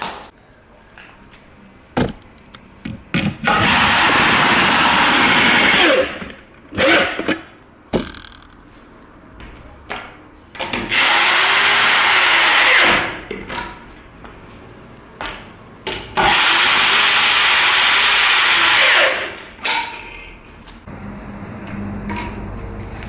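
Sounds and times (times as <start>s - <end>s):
handling knocks: 2.0s - 3.4s
electric drill running under load: 3.5s - 6.2s, 10.9s - 13.0s, 16.2s - 19.3s.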